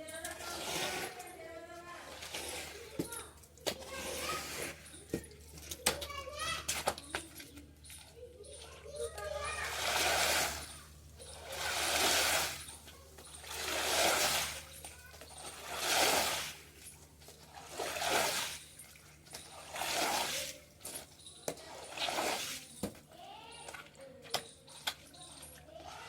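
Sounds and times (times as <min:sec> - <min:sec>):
water splashing: 0:09.4 - 0:22.9.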